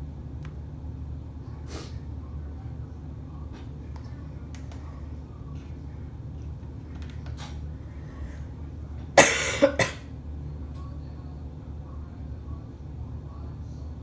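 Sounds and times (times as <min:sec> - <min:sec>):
steady low hum: 0:00.0 - 0:14.0
person coughing: 0:09.2 - 0:10.1.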